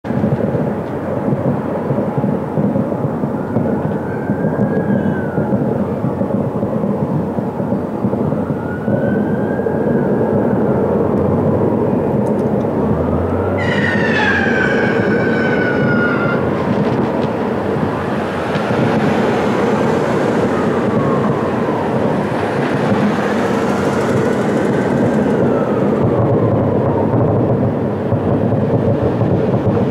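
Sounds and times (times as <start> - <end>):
loud steady din: 0.1 - 29.9
siren wailing: 1.9 - 29.9
shrill whistle sliding down: 13.6 - 16.4.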